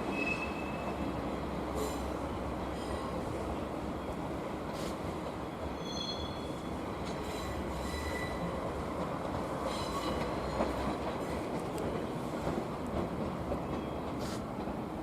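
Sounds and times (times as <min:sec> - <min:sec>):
train rumbling on rails: 0:00.0 - 0:15.0
high wheel squeals: 0:05.7 - 0:06.7.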